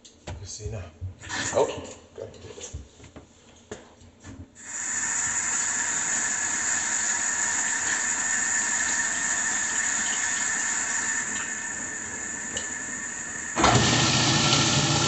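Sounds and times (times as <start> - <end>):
faucet water running into sink: 4.6 - 15.0.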